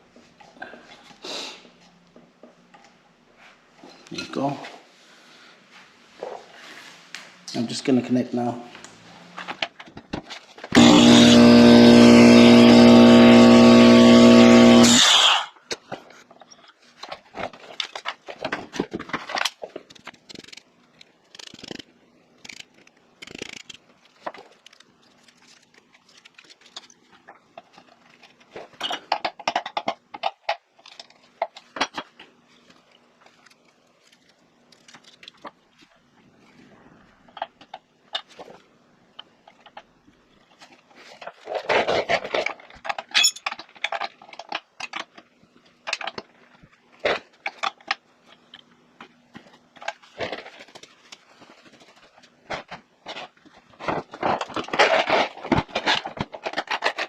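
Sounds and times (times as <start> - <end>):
clicks and knocks of parts handled: 8.8 - 10.8, 15.6 - 36.1, 37.2 - 57.0
air compressor running: 10.7 - 15.5.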